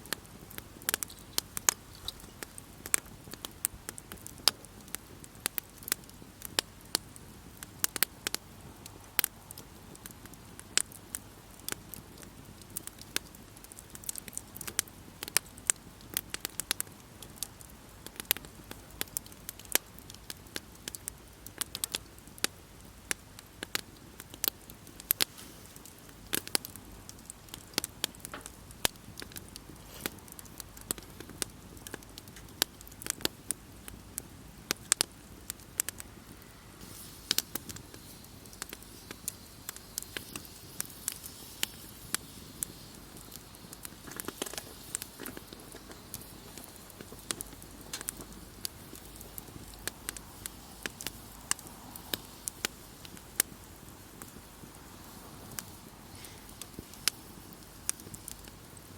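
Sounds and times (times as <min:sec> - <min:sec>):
campfire crackling and popping: 0:00.0 - 0:58.9
low steady hiss: 0:00.0 - 0:58.9.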